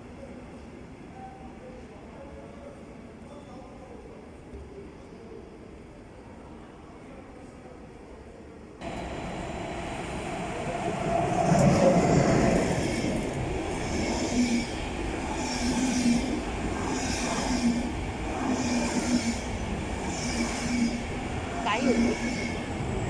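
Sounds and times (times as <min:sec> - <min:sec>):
train running: 0:08.8 - 0:23.0.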